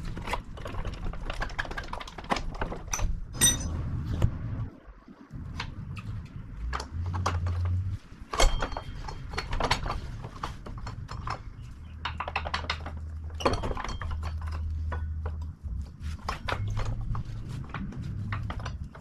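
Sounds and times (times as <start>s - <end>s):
metal tools clinking and clanking: 2.8s - 3.8s, 8.3s - 15.6s
low hum: 3.2s - 12.0s.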